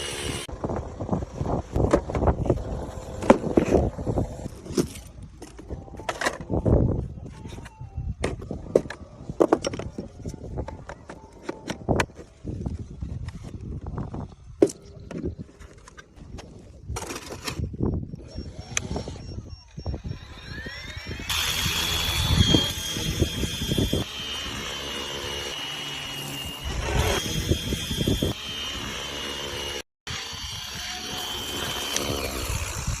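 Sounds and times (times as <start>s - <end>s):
wind buffeting microphone: 0.4s - 24.1s
helicopter motor whine: 18.2s - 33.0s.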